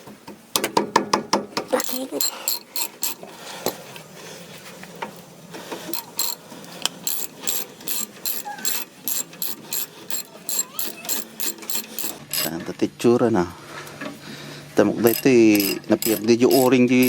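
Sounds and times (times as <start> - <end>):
ratchet wrench clicking: 1.8 - 3.2, 5.9 - 12.5, 15.0 - 17.0.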